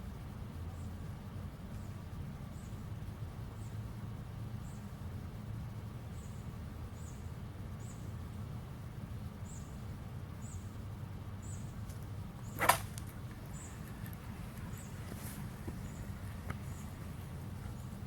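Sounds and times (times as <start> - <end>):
steady low rumble: 0.0 - 18.0
sharp short noise: 12.5 - 13.0
insect chirping: 13.3 - 15.1.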